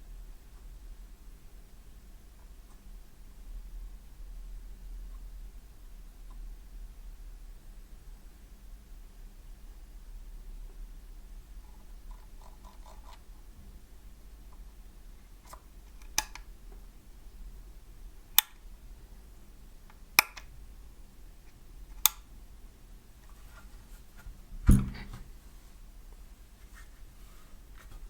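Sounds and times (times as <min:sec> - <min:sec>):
loud knock with low thud: 0:24.6 - 0:25.2.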